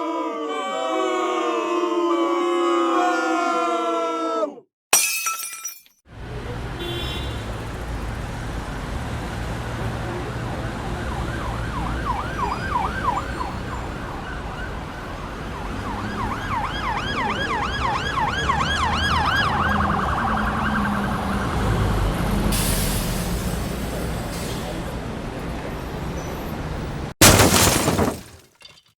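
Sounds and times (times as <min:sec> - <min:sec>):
low traffic rumble: 0:06.1 - 0:27.1
emergency siren yelping: 0:10.5 - 0:21.6.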